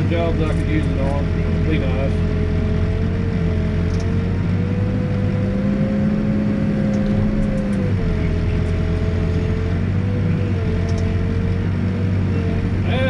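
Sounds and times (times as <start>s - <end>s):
backhoe diesel engine running: 0.0s - 13.0s.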